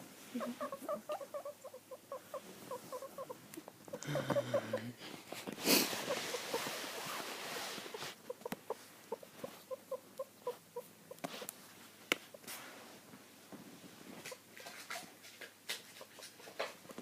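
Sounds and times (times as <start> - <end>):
rustling: 0.0 - 17.0.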